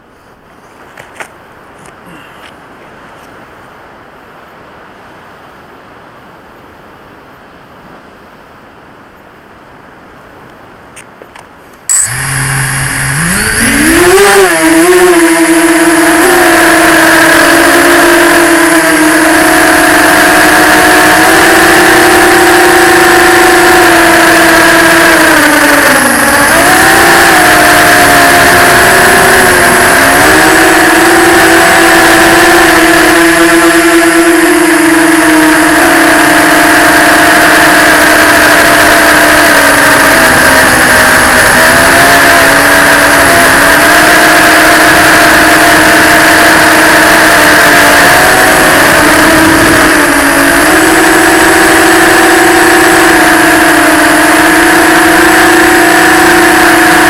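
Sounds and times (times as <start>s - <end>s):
drone motors and propellers whining: 0.0s - 2.6s, 11.8s - 57.0s
wind noise on microphone: 22.9s - 57.0s.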